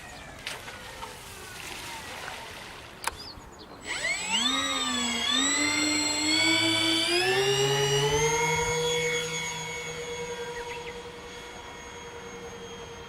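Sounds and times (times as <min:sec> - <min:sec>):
electric motors and propellers whining: 0:03.0 - 0:13.0.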